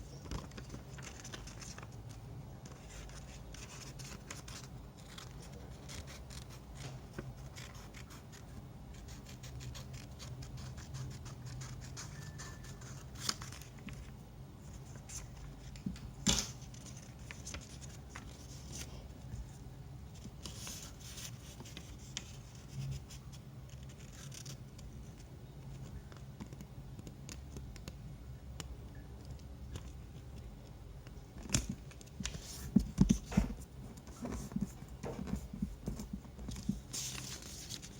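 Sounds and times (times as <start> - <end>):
steady low hum: 0.0 - 37.9
paper rustling: 0.1 - 8.5, 11.6 - 19.6, 20.2 - 24.6, 31.5 - 37.9.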